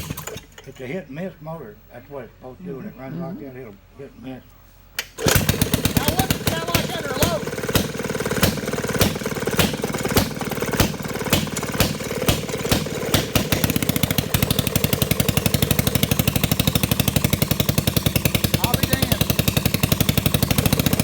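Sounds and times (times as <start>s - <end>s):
hit-and-miss gas engine firing: 0.0s - 0.6s, 5.0s - 21.0s.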